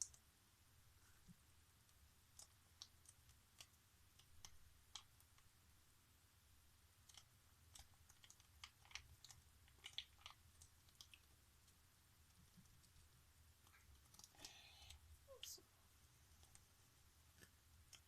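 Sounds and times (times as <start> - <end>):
sticky clicks of slime: 7.0 - 11.3.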